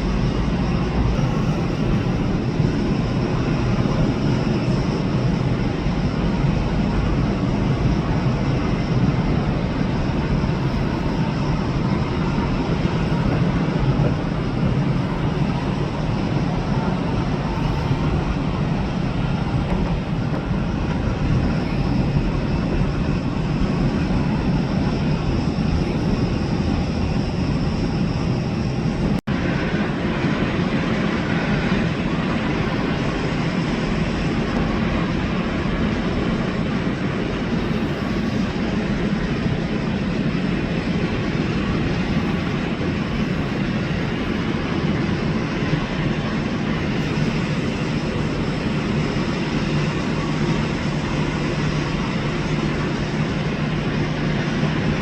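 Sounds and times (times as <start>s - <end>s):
faint high whine: 0.0s - 55.0s
jet airliner engines running: 0.0s - 55.0s.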